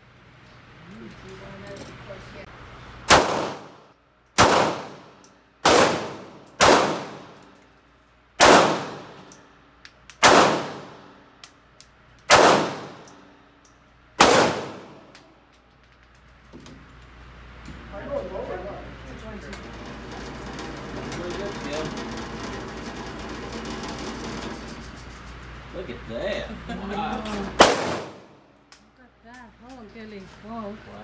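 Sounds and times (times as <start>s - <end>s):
handgun shots with echo: 3.1s - 3.8s, 4.4s - 7.4s, 8.4s - 9.3s, 10.2s - 11.1s, 12.3s - 13.2s, 14.2s - 15.2s, 27.6s - 28.4s.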